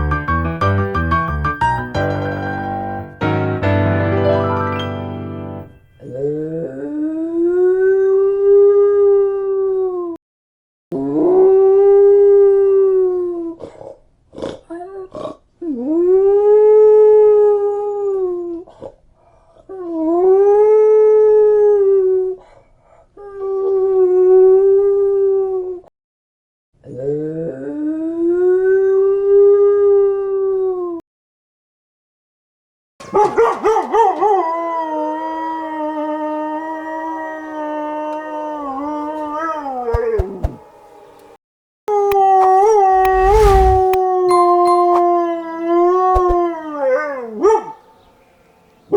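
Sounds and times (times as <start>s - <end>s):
dog howling: 33.7s - 40.4s
short sharp sounds: 42.9s - 44.0s.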